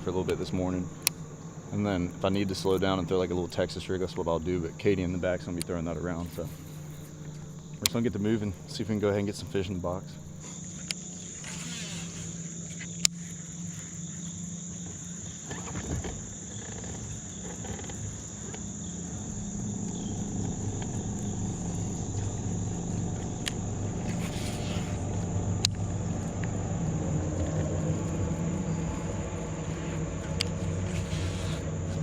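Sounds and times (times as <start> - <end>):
boat motor humming: 0.0 - 32.0
insects droning: 0.0 - 32.0
sharp clicks: 5.5 - 9.6, 16.5 - 26.6.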